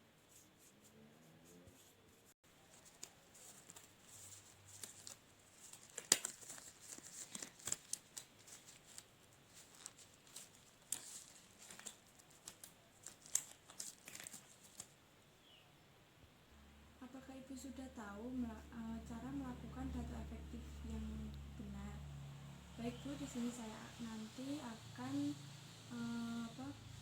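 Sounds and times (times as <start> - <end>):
hands crinkling material: 2.6 - 15.0.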